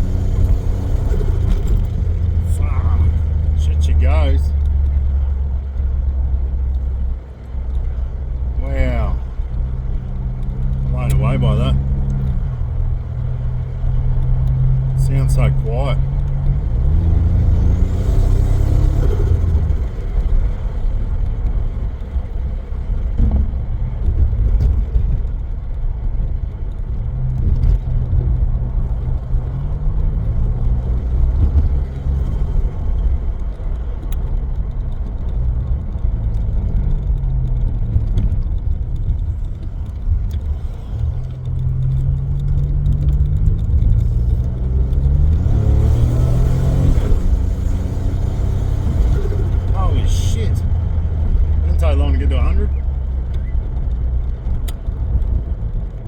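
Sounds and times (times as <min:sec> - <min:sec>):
turbocharged car engine revving: 0:00.0 - 0:22.5, 0:39.8 - 0:55.6.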